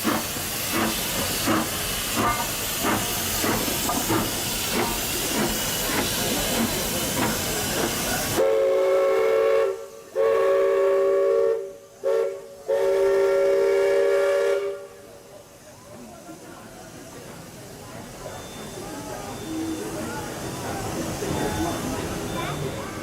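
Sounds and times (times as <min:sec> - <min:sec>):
locomotive exhaust puffs: 0:00.0 - 0:23.0
steam locomotive hissing: 0:00.0 - 0:23.0
three-chime steam whistle: 0:08.4 - 0:14.9.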